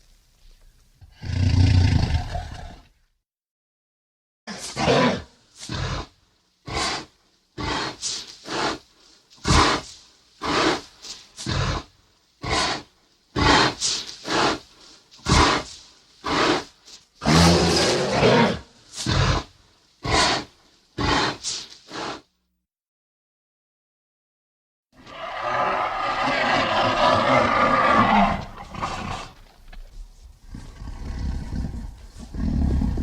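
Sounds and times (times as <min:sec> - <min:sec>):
dinosaur roars: 0:17.2 - 0:19.5, 0:25.0 - 0:29.4, 0:30.4 - 0:33.0.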